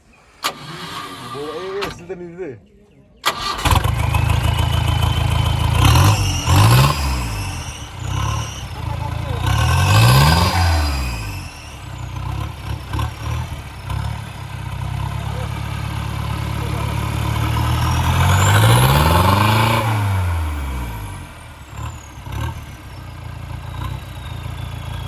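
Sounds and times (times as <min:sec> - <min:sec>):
diesel engine idling and revving: 0:00.4 - 0:02.2, 0:03.2 - 0:25.0.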